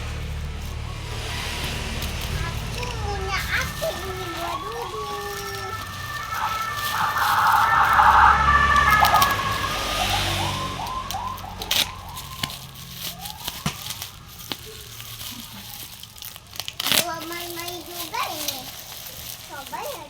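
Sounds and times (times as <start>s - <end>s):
low rumble: 1.0s - 13.4s
siren wailing: 1.2s - 15.2s.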